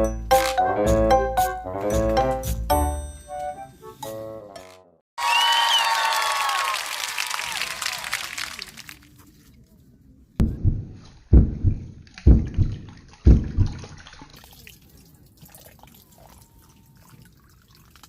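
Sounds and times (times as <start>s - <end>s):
dull low double thumps: 10.4s - 14.0s.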